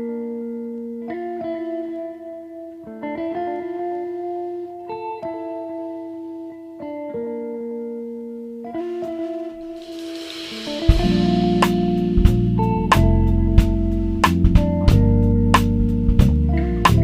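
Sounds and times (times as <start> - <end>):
guitar strumming sustained chords: 0.9 - 15.6.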